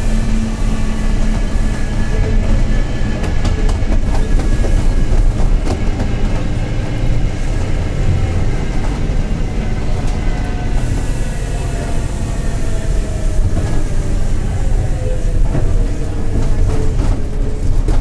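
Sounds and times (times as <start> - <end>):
bus diesel engine drone: 0.0 - 18.0.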